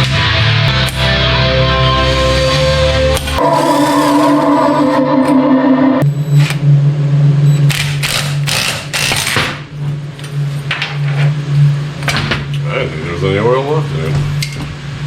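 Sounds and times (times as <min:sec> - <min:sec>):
rock guitar music: 0:00.0 - 0:06.0
steady low hum: 0:03.4 - 0:07.6.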